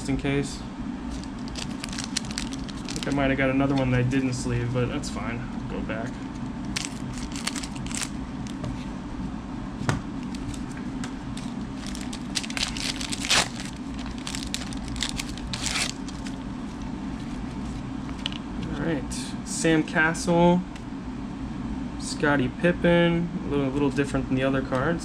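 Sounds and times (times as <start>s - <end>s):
steady low hum: 0.0s - 25.0s
cards rustling: 1.1s - 3.3s, 6.7s - 8.7s, 10.2s - 18.4s
wrapper crinkling and tearing: 1.1s - 3.3s, 6.7s - 8.6s, 11.4s - 16.4s.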